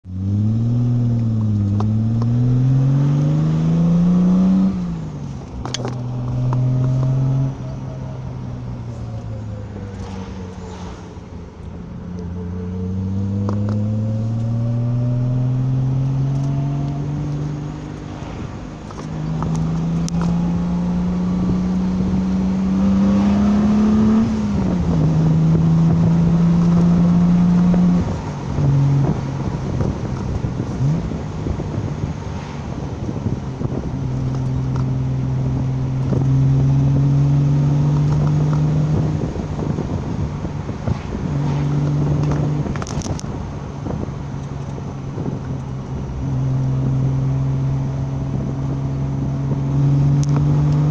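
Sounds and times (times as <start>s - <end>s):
car engine accelerating and shifting: 0.0s - 50.9s.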